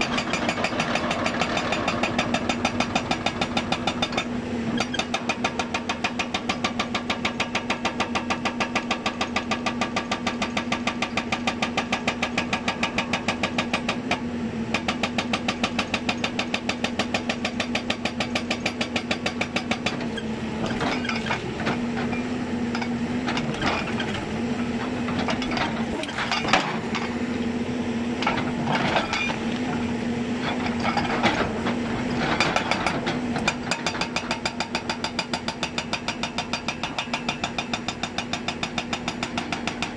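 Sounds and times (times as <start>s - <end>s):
excavator diesel engine running: 13.4s - 36.0s
hydraulic breaker hammering: 32.3s - 39.9s.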